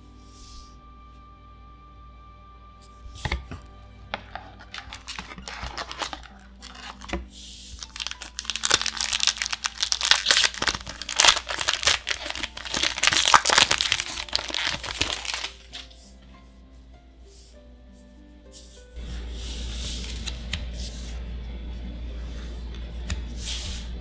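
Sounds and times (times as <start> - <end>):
foil wrapper tearing and crinkling: 4.1 - 15.9.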